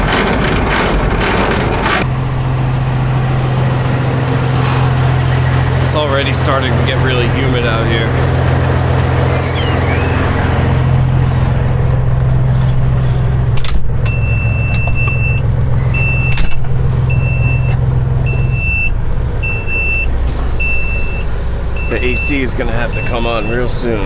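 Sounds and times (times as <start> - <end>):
engine knock: 0.0 - 9.6, 20.1 - 24.0
truck diesel engine running: 0.0 - 24.0
high electronic beeps: 18.3 - 23.8.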